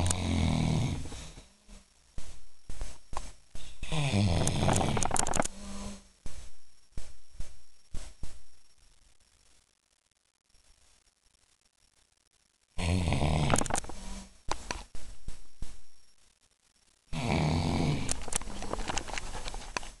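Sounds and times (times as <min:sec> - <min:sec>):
loud snoring: 0:00.0 - 0:01.1, 0:03.8 - 0:06.0, 0:12.8 - 0:14.3, 0:17.1 - 0:18.1.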